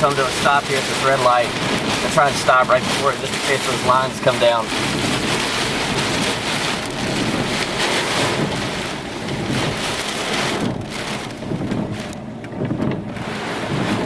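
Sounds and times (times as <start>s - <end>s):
rain pelting a vehicle: 0.0s - 14.0s.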